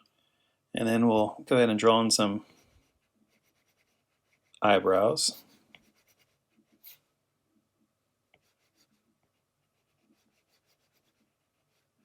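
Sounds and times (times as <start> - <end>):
stylus scratching on tablet screen: 2.4 - 7.1, 8.4 - 12.0.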